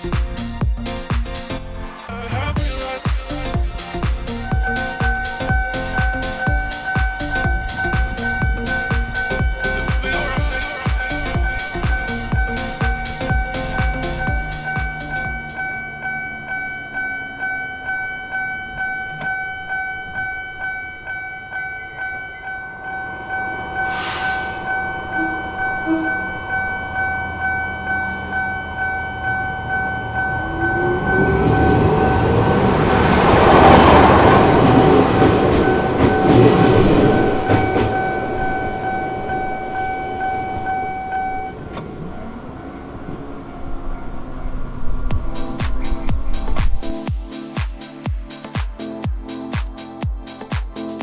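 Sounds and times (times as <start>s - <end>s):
level-crossing warning bell: 4.4s - 43.5s
train wheels clattering over rail joints: 33.2s - 38.7s.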